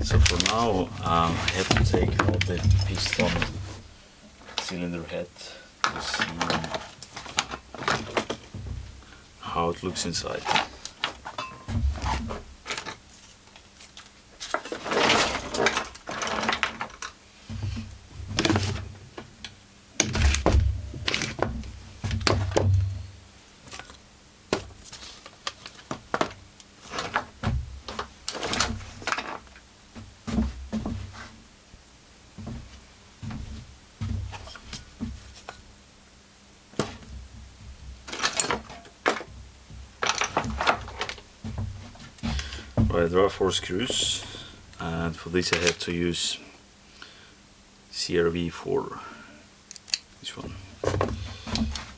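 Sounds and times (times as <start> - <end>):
hand tools clunking and scraping: 0.0 - 3.8, 9.8 - 13.0, 14.4 - 18.9, 38.1 - 45.9.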